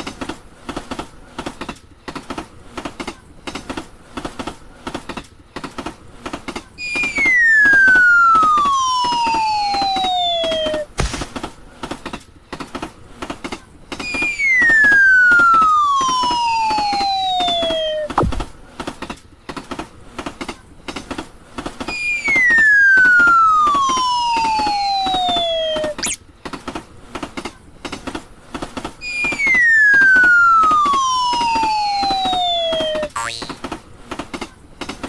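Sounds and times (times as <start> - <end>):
tone gliding down in pitch: 6.8 - 10.8, 14.0 - 18.5, 21.9 - 26.2, 29.0 - 33.6.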